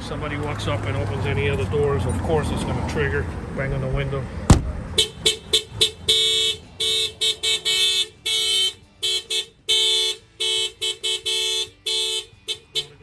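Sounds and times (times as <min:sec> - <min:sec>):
car alarm blaring: 0:04.9 - 0:13.0.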